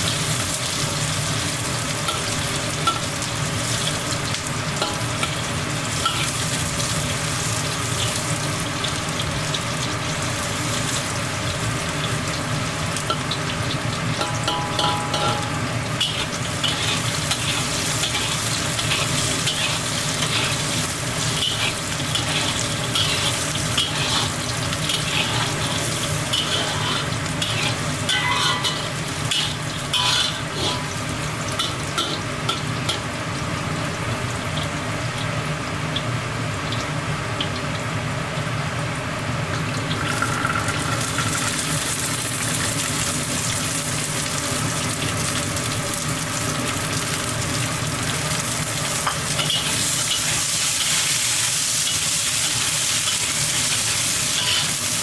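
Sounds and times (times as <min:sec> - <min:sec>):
food sizzling in a pan: 0:00.0 - 0:55.0
spatula scraping a pan: 0:16.0 - 0:31.0, 0:49.0 - 0:55.0.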